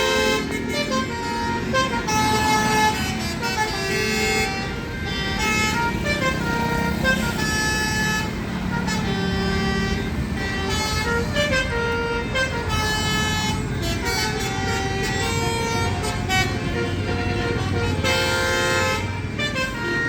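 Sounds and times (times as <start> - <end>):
musical bus air horns: 0.0 - 20.0
road traffic rumble: 0.0 - 20.0.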